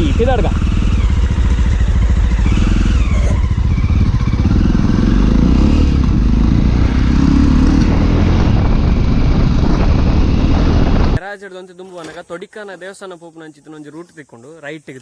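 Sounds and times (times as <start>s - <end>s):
motorcycle engine rumbling: 0.0s - 11.2s.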